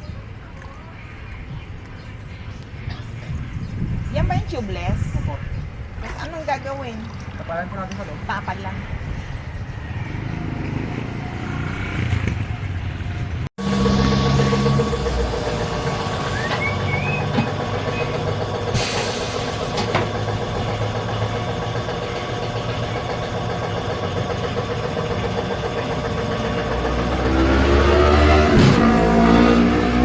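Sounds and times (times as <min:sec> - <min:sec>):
engine idling: 0:13.6 - 0:29.4.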